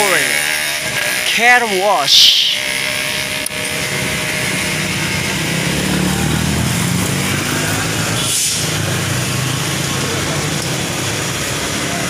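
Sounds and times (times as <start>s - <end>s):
small engine running: 0.0s - 12.0s
hiss: 8.2s - 8.7s.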